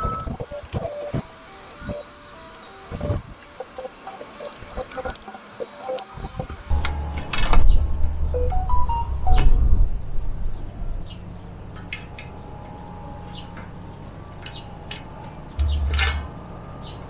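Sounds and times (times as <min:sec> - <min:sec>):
bird chirping: 0:00.0 - 0:06.8, 0:15.6 - 0:16.0.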